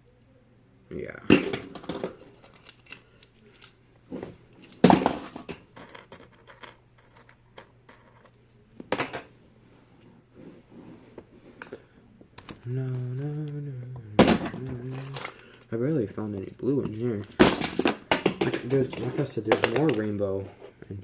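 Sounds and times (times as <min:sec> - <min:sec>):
plastic toys clicking and clattering: 0:01.7 - 0:03.8, 0:14.3 - 0:15.7, 0:16.8 - 0:20.2.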